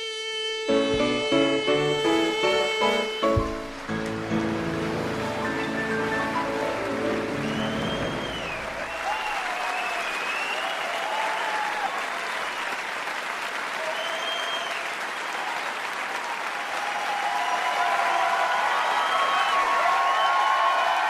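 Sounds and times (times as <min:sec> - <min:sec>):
crowd clapping: 0:03.3 - 0:21.0
cheers and whoops: 0:07.2 - 0:12.9, 0:13.7 - 0:21.0.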